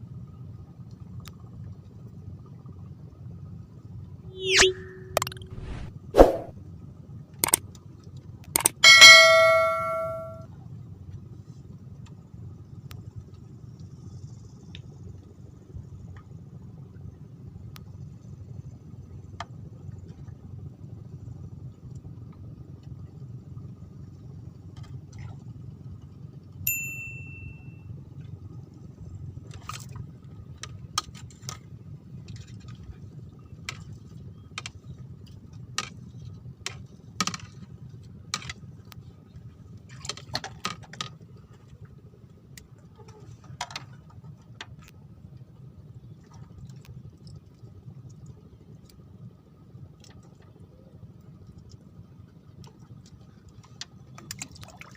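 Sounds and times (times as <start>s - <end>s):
bright ding: 4.4s - 5.9s, 8.6s - 10.4s, 26.7s - 27.8s.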